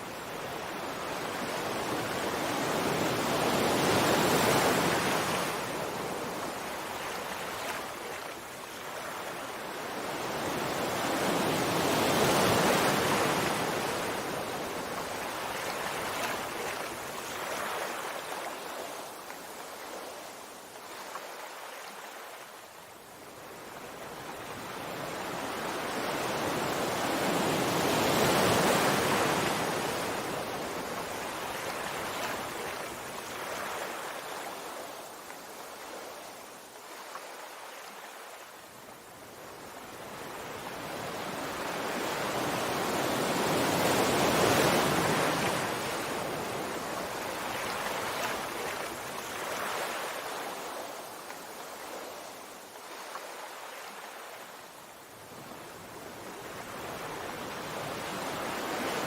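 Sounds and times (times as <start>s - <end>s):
sea waves washing onto shore: 0.0s - 59.0s.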